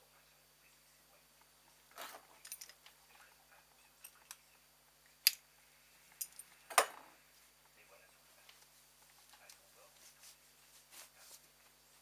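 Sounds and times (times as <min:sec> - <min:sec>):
hand tools and engine parts clinking: 0:02.0 - 0:02.8.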